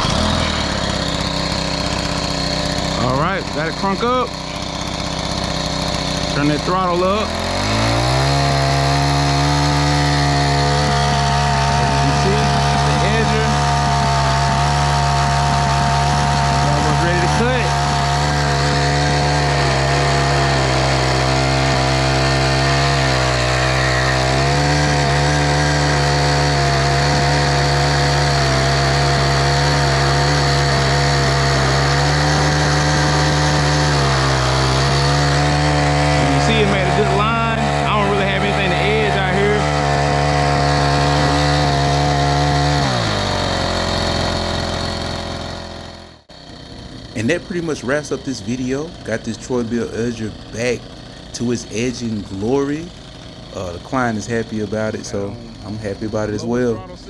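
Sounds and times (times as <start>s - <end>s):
blade cutting edging line: 0.0s - 57.0s
edger engine running: 0.0s - 57.0s.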